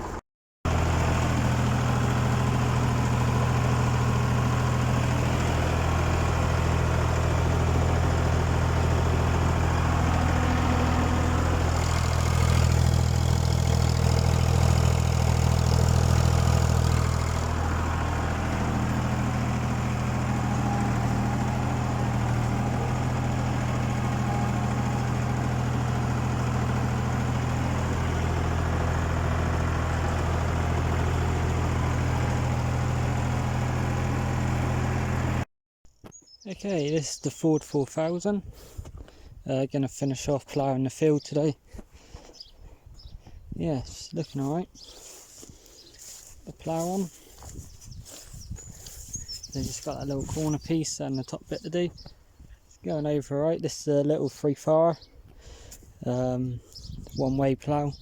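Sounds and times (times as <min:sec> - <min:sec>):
tractor engine running: 0:00.0 - 0:35.4, 0:43.6 - 0:53.3, 0:55.2 - 0:58.0.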